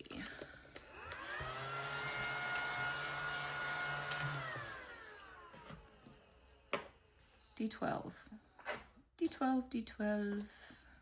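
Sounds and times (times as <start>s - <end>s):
small electric motor whine: 0.9s - 6.1s.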